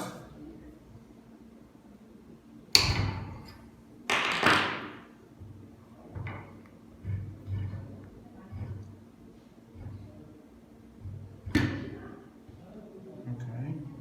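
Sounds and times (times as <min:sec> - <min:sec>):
crimping machine parts knocking: 0:04.1 - 0:12.6.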